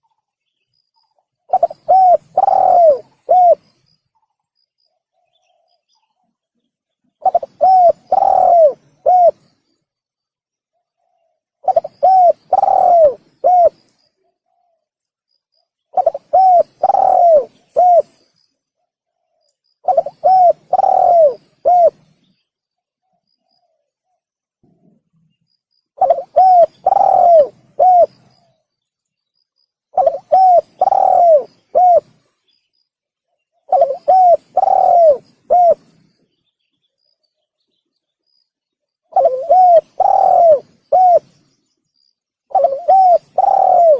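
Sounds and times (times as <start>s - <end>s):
dove cooing: 1.5s - 3.7s, 7.2s - 9.5s, 11.0s - 13.8s, 15.9s - 18.2s, 19.8s - 22.2s, 26.0s - 28.5s, 29.9s - 32.3s, 33.7s - 36.0s, 39.1s - 41.5s, 42.5s - 43.9s.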